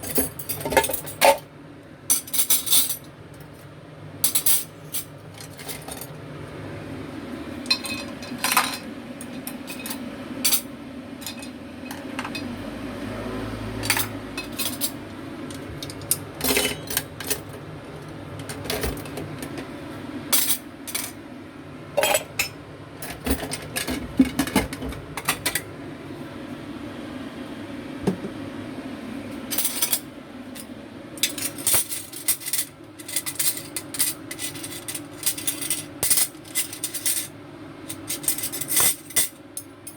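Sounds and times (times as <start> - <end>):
dishes and pots clinking: 0.0 - 1.5, 7.6 - 12.5, 13.8 - 17.5, 22.0 - 25.7.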